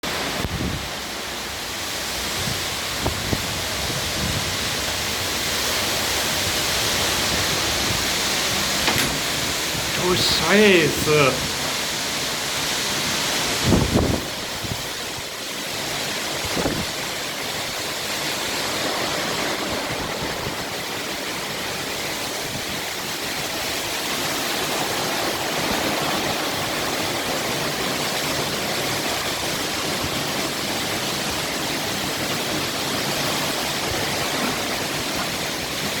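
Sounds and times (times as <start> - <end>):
heavy rain: 0.0 - 36.0
strong wind gusts: 2.2 - 5.5, 13.6 - 15.2, 16.4 - 17.0.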